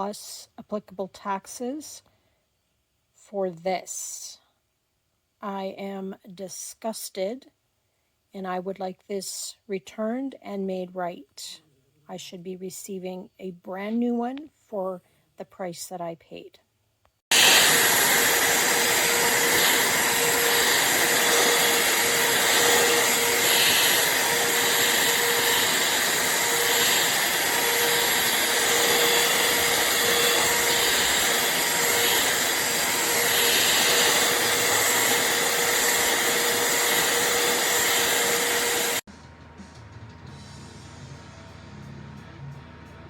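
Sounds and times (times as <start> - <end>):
handheld vacuum running: 17.3 - 39.1.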